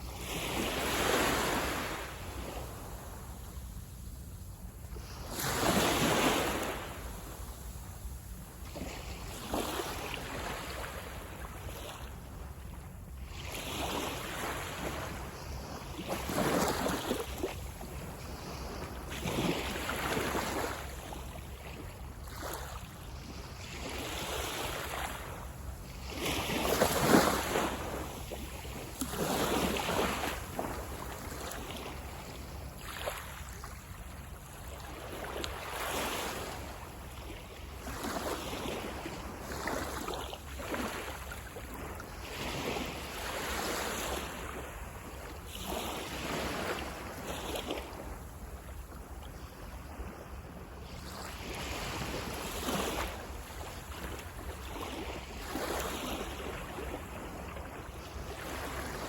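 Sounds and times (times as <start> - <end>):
low rumble of surf: 0.0 - 59.0
small waves washing up beach: 0.0 - 59.0.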